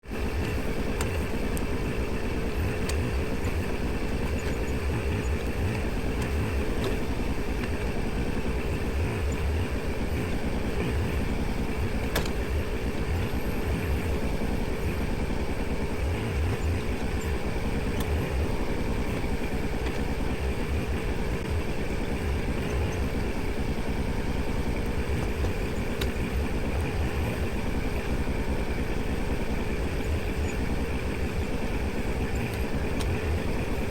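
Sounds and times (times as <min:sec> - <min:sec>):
tractor diesel engine running: 0:00.0 - 0:33.9.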